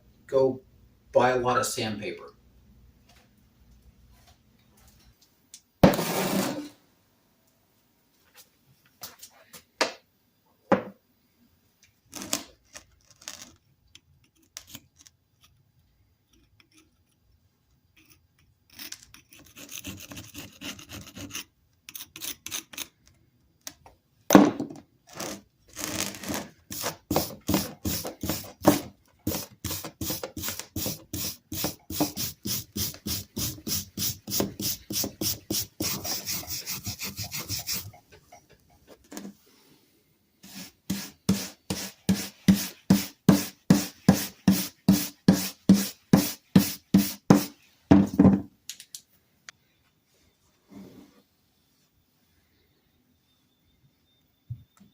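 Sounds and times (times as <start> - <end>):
rubbing rust off hammer: 26.7 - 38.1.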